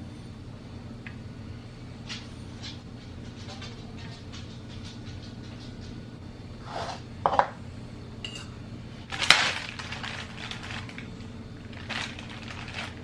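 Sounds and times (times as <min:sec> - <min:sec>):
steady low hum: 0:00.0 - 0:13.0
dishes clattering: 0:06.8 - 0:07.6
dishes and utensils clinking: 0:08.2 - 0:08.5.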